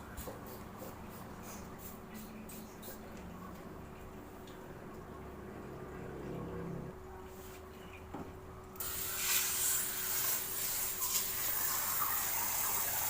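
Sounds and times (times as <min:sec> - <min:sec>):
water jet spraying: 0:08.8 - 0:13.0.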